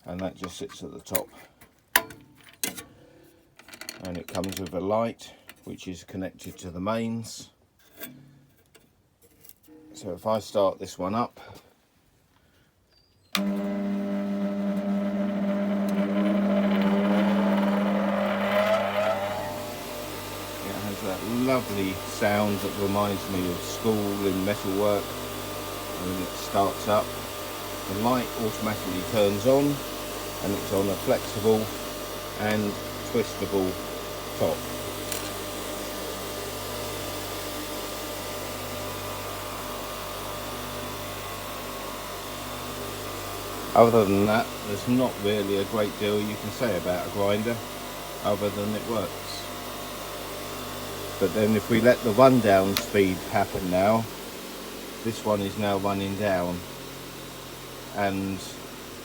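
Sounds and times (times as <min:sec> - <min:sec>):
grinder motor humming and whining: 0:13.4 - 0:59.0.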